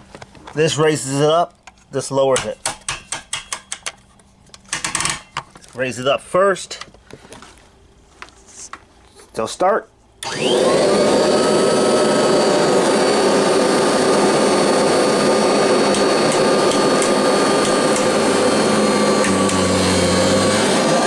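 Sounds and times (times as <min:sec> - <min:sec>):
vacuum cleaner running: 0:10.2 - 0:21.0.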